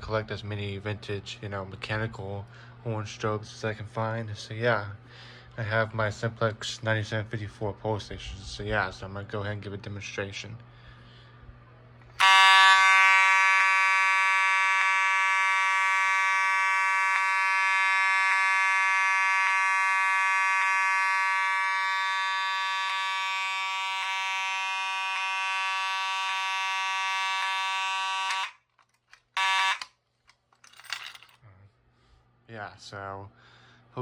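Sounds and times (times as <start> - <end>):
fire alarm horn buzzing: 12.1 - 28.7, 29.3 - 30.0.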